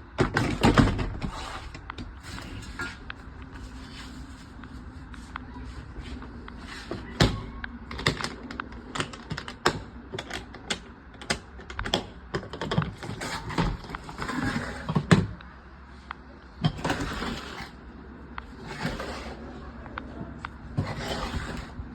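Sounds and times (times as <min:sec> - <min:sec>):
plastic case rustling scrapes: 0:13.0 - 0:15.1, 0:16.8 - 0:17.8, 0:18.6 - 0:19.5, 0:20.8 - 0:21.8.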